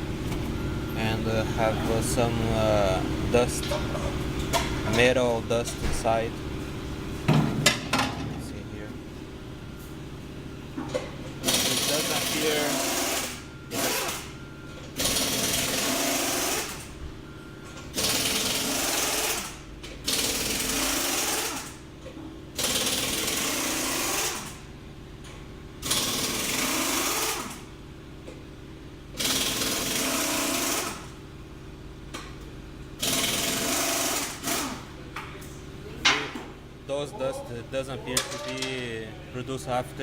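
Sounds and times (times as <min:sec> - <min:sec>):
steady low hum: 0:00.0 - 0:15.0, 0:34.2 - 0:40.0
loud mechanical noise bursts: 0:11.4 - 0:17.0, 0:17.9 - 0:21.9, 0:22.5 - 0:24.7, 0:25.8 - 0:27.7, 0:29.1 - 0:31.2, 0:33.0 - 0:35.0.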